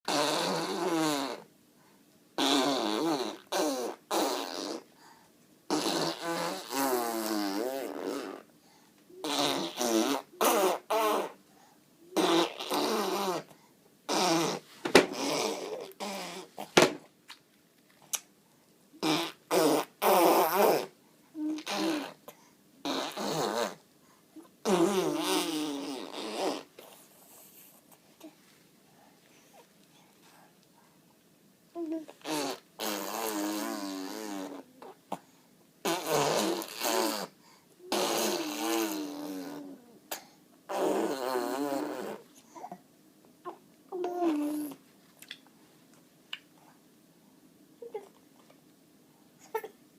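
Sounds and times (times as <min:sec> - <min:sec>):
person making fart noises: 0:00.1 - 0:01.5, 0:02.4 - 0:04.9, 0:05.7 - 0:08.5, 0:09.2 - 0:11.4, 0:12.1 - 0:13.5, 0:14.1 - 0:17.1, 0:19.0 - 0:23.8, 0:24.6 - 0:27.0, 0:32.0 - 0:35.0, 0:35.8 - 0:39.8, 0:40.7 - 0:42.3.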